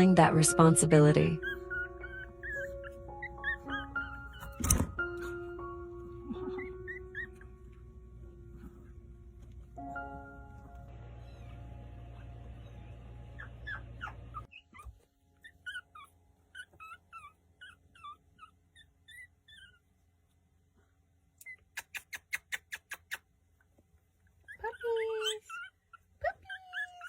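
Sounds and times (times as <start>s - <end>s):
puppy whimpering: 1.1s - 7.8s, 11.1s - 20.0s, 24.3s - 27.0s.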